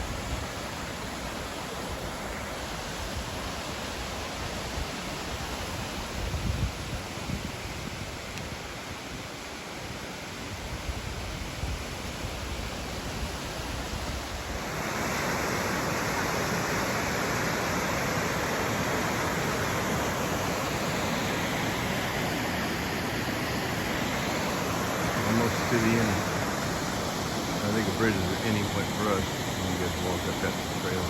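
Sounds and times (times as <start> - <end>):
waterfall rushing: 12.5 - 31.0.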